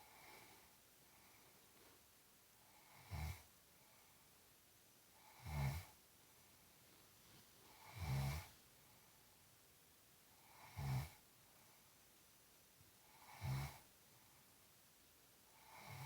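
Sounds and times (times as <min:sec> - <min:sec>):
low buzzing snores: 0:02.7 - 0:03.5, 0:05.2 - 0:06.0, 0:07.8 - 0:08.5, 0:10.4 - 0:11.2, 0:13.1 - 0:13.9, 0:15.6 - 0:16.0.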